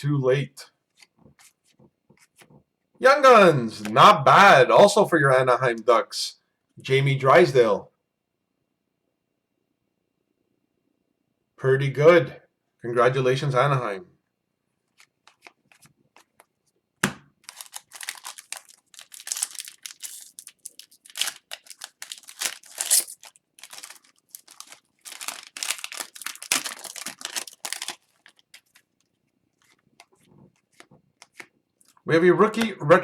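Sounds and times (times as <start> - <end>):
foil wrapper tearing and crinkling: 17.4 - 30.2.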